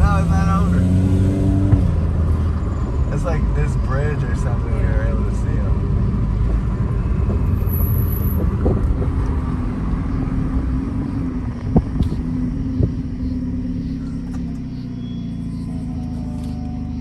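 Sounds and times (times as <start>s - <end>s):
sharp thumps: 0.0s - 3.0s, 6.4s - 10.1s, 11.4s - 15.5s
car cabin low rumble: 0.0s - 17.0s.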